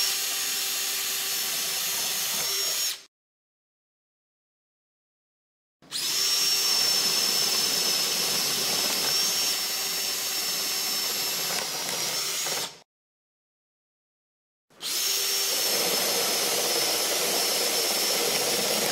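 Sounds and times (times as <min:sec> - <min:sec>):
power drill boring wood: 0:00.0 - 0:03.1, 0:05.9 - 0:12.8, 0:14.8 - 0:18.9.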